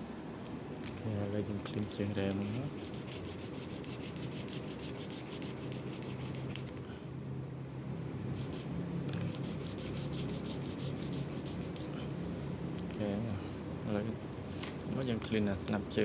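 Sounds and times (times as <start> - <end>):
rapid scrubbing: 1.1 - 6.6, 8.4 - 12.0.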